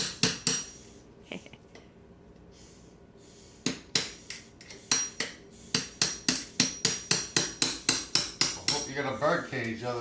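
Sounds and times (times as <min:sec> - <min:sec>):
hammer striking plastered wall: 0:03.6 - 0:09.0.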